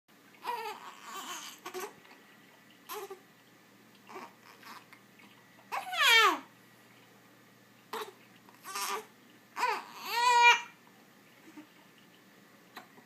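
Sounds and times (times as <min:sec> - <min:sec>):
baby crying: 0:00.4 - 0:02.0, 0:02.9 - 0:03.2, 0:04.1 - 0:04.9, 0:05.7 - 0:06.5, 0:07.9 - 0:10.8
baby hiccuping and whimpering: 0:02.9 - 0:03.2.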